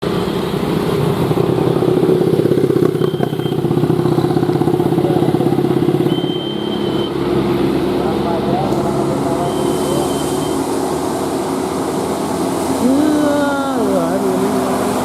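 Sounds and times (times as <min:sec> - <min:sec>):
vehicle engine passing: 0:00.0 - 0:15.0
short high tones: 0:09.4 - 0:10.7.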